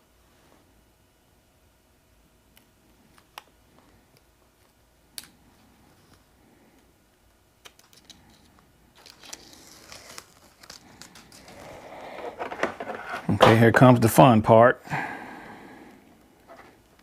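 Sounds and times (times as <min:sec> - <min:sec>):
small parts clicking and tapping: 0:07.6 - 0:09.4
crackling rustle: 0:07.8 - 0:12.4.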